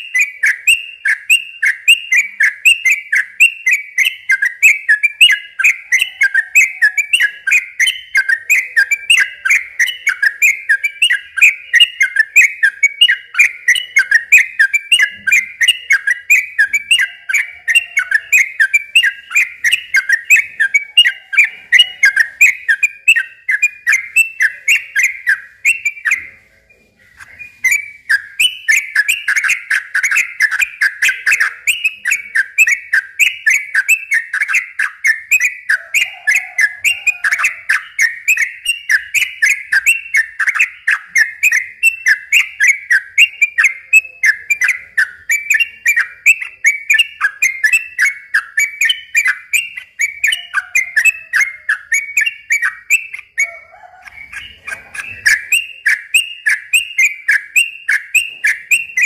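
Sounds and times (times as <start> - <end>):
bird singing rapid chirps: 0.0 - 59.0.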